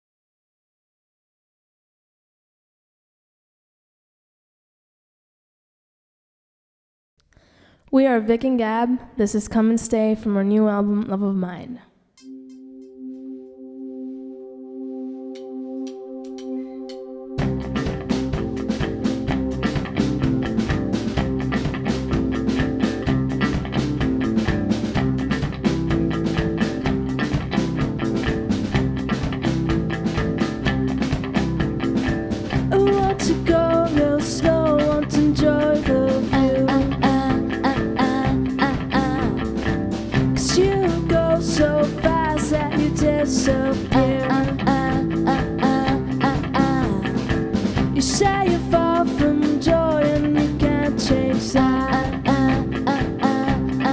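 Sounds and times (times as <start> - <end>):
guitar: 12.2 - 53.9
live rock band playing: 17.3 - 53.9
steady drum beat: 17.4 - 53.9
person singing: 32.7 - 39.6, 40.4 - 47.3, 47.9 - 53.9.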